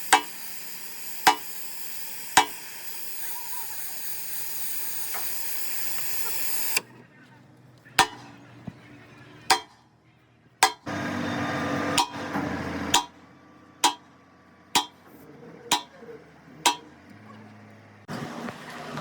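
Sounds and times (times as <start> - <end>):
hammer striking metal: 0.0 - 1.6, 8.0 - 8.4, 9.5 - 9.8, 10.6 - 10.9, 11.9 - 12.3, 12.9 - 13.2, 13.8 - 14.1, 14.8 - 15.1, 15.7 - 16.0, 16.6 - 16.9
harsh hissing: 0.0 - 6.8.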